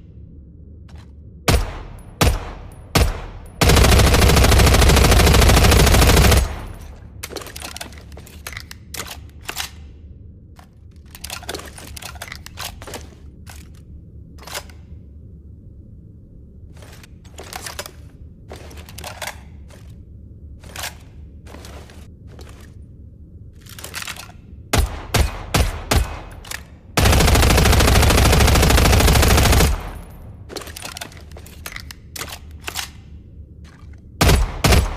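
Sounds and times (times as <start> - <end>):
automatic gunfire burst: 1.5 - 6.8.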